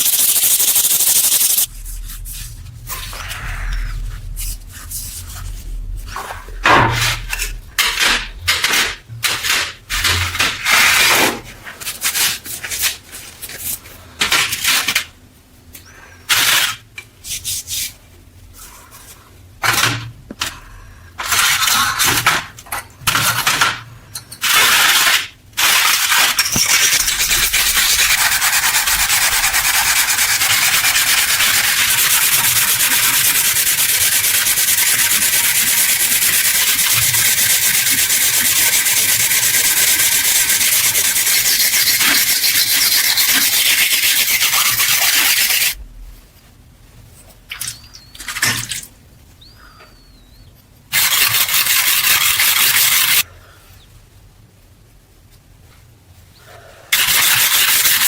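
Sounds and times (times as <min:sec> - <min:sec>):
abrasive rubbing on metal: 0:00.0 - 0:08.4, 0:26.4 - 0:45.8.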